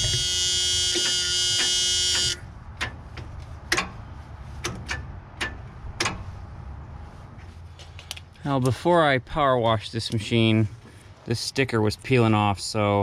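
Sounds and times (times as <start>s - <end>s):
warning buzzer: 0.0s - 2.4s.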